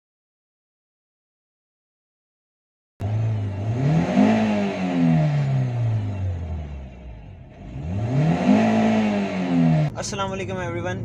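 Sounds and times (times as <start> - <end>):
car engine revving: 3.0 - 11.0.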